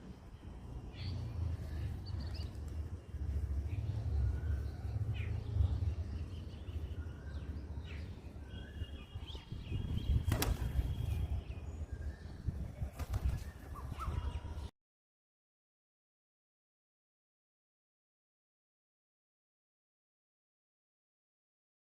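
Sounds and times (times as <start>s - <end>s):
wind rumble on microphone: 0.0s - 14.7s
birds chirping and whistling: 0.8s - 14.7s.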